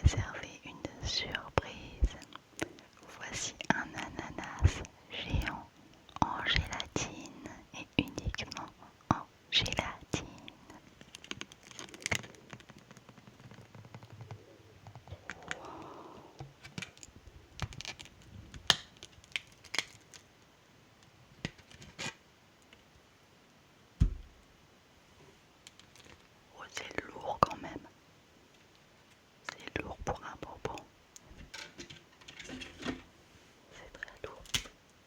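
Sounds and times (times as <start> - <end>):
dull thump: 24.0 - 24.4
soft rustle: 28.5 - 34.6.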